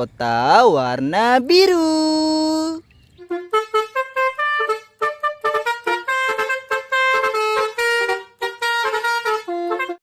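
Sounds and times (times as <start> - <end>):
bus horn playing a tune: 3.2 - 10.0.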